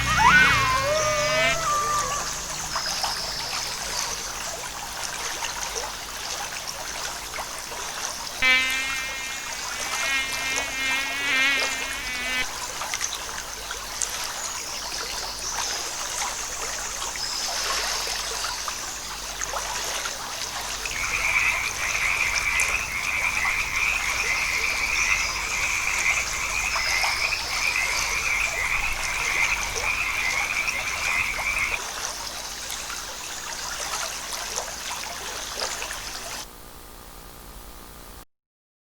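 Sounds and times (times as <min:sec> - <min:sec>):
frogs calling: 0:00.0 - 0:04.8, 0:08.4 - 0:12.4, 0:20.5 - 0:31.8.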